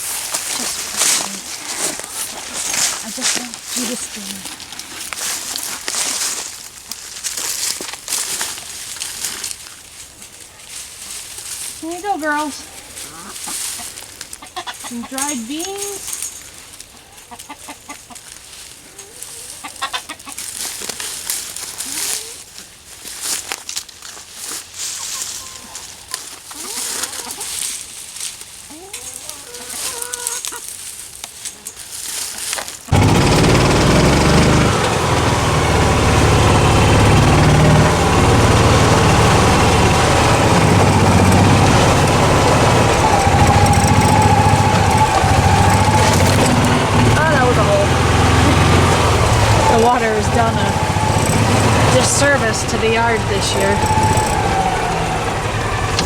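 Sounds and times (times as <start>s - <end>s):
small engine running: 0.0s - 6.5s, 32.9s - 56.0s
hens clucking: 12.1s - 15.6s, 16.9s - 18.4s, 19.0s - 20.5s, 32.9s - 56.0s
hen rising and falling call: 32.9s - 56.0s.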